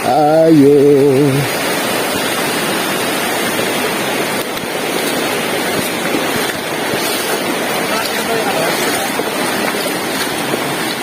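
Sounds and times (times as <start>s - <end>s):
waterfall and stream rushing: 0.0s - 11.0s.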